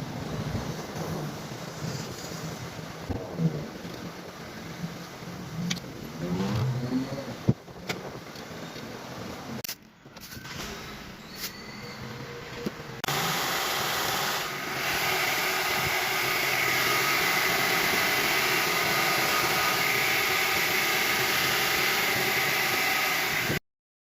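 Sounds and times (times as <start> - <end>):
engine whirring: 4.8 - 8.8, 11.9 - 23.6.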